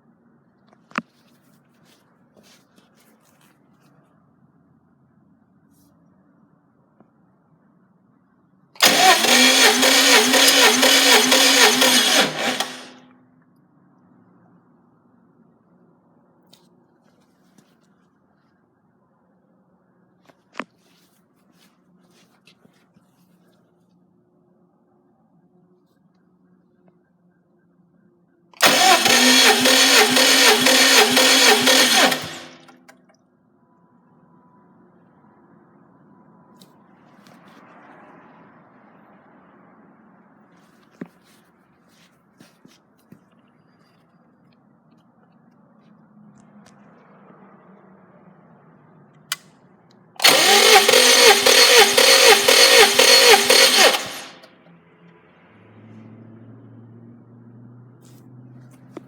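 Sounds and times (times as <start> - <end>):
starter motor cranking engine: 8.8 - 13.0, 28.6 - 33.0, 50.2 - 54.5.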